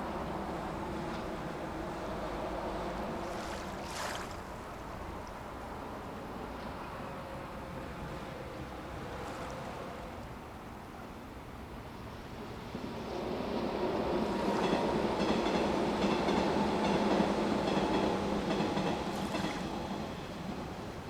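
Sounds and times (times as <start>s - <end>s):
train wheels clacking: 13.6s - 21.0s.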